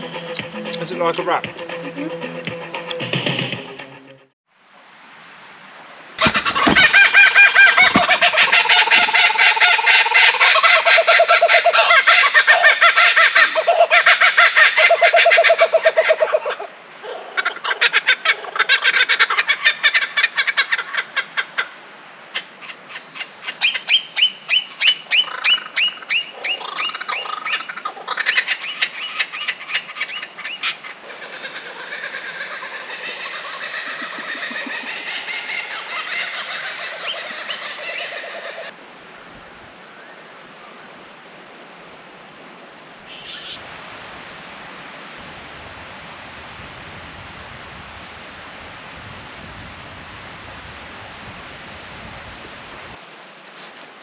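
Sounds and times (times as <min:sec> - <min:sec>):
birds calling: 0:06.2 - 0:41.4, 0:42.3 - 0:43.7.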